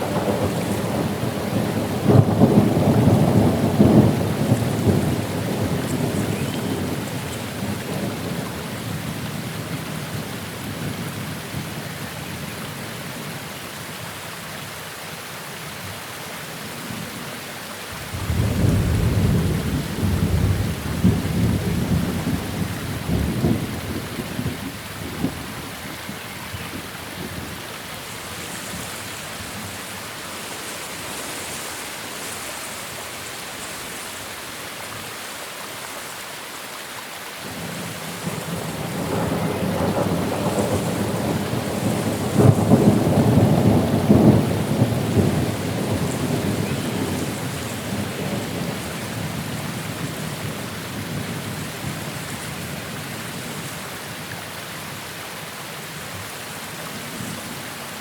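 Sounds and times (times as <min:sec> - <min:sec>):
thunder rumbling: 0:00.0 - 0:09.4, 0:18.0 - 0:26.1, 0:37.5 - 0:52.9
steady rain hissing: 0:00.0 - 0:58.0.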